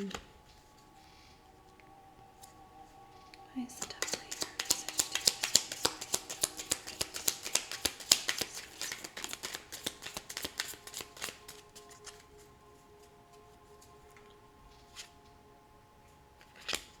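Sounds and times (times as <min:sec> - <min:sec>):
cards being shuffled: 0:00.0 - 0:00.3, 0:03.8 - 0:12.5, 0:16.4 - 0:17.0.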